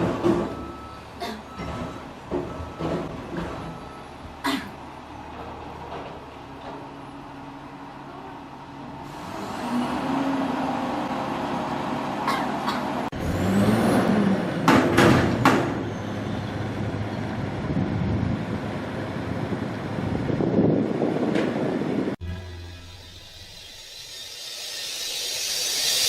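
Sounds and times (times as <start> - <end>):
garbage truck engine running: 22.0 - 26.0
air brakes hissing: 22.4 - 26.0.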